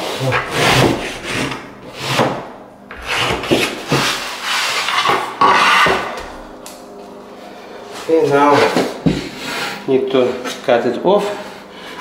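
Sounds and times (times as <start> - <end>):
wooden floorboards scraping together: 0.1 - 6.4.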